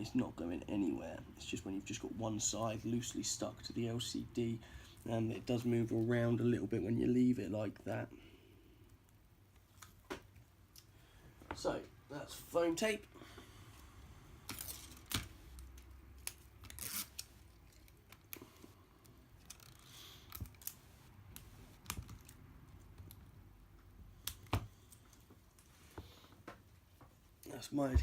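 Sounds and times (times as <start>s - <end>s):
tape peeling and rustling: 14.4s - 23.6s.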